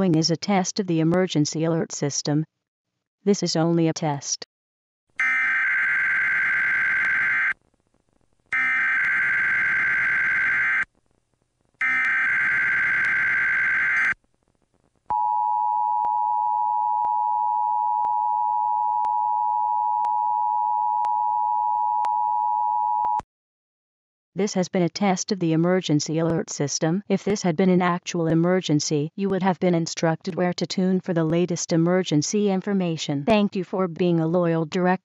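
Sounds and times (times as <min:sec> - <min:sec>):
screeching digital data tones: 0:08.6 - 0:10.8.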